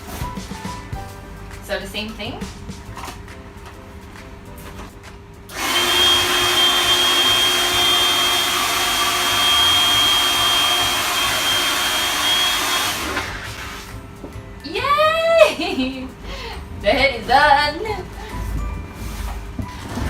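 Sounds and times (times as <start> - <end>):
hairdryer running: 5.5 - 14.0.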